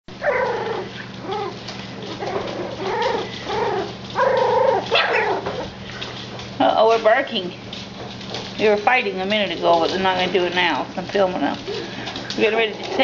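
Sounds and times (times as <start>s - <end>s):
puppies whining and yipping: 0.1s - 5.8s
steady low hum: 0.1s - 13.0s.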